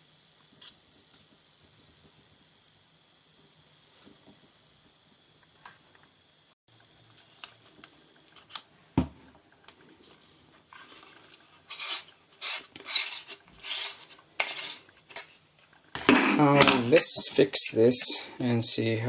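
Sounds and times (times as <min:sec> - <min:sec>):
plastic scraping and rubbing: 0:10.1 - 0:15.5.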